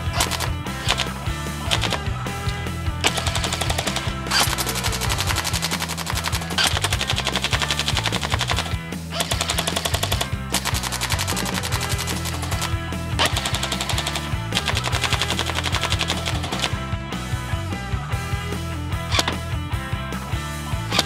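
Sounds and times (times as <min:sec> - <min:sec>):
background music: 0:00.0 - 0:21.0
airsoft rifle full-auto firing: 0:00.1 - 0:02.1, 0:03.0 - 0:16.8.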